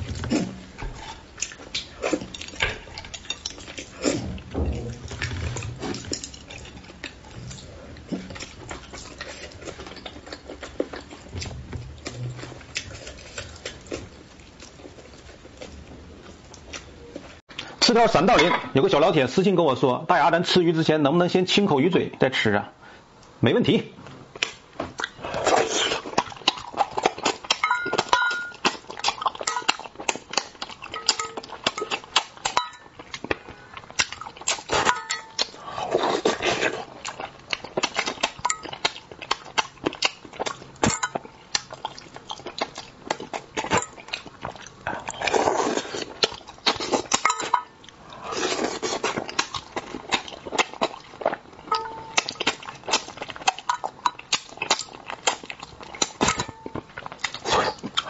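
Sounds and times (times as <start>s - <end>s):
chewing clicks: 52.1s - 58.0s.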